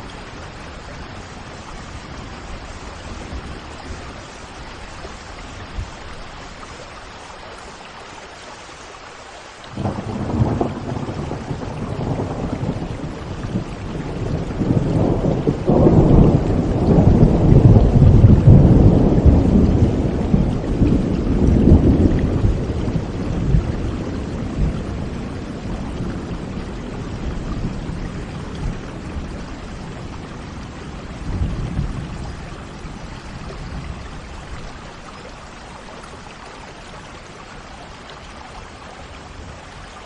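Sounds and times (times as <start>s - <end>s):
steady rain: 0.0s - 40.0s
rolling thunder: 9.8s - 34.8s.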